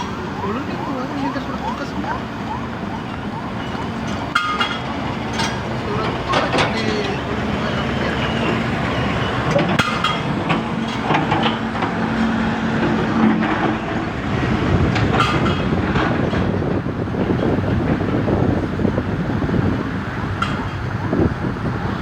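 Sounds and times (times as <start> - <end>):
engine humming: 0.0 - 22.0
knocks and clanks: 3.1 - 7.3, 9.4 - 18.3.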